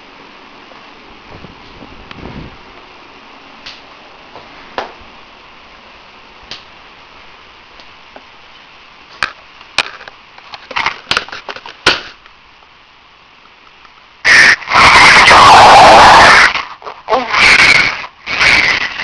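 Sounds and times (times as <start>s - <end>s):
loud distorted snore: 14.3s - 19.0s.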